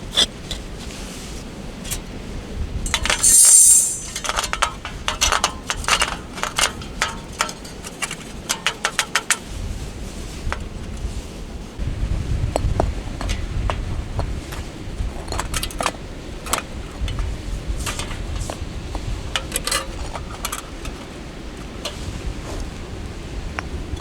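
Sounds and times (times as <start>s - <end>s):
metal gear clinking: 2.9s - 9.2s.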